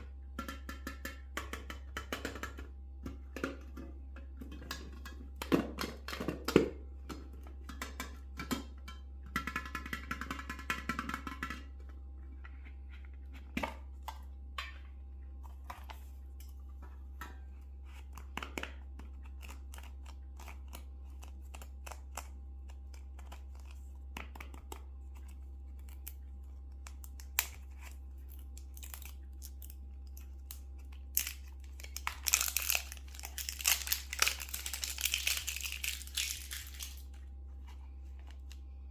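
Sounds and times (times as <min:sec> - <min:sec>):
low steady hum: 0:00.0 - 0:38.9
wrapper crinkling: 0:25.6 - 0:37.2
candy rattling with ringing: 0:31.1 - 0:37.1.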